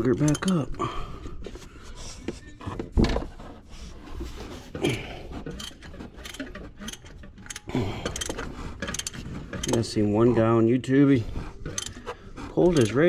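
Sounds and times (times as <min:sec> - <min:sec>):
socket ratchet clicking: 0:00.0 - 0:00.7, 0:05.5 - 0:10.0, 0:11.7 - 0:12.1.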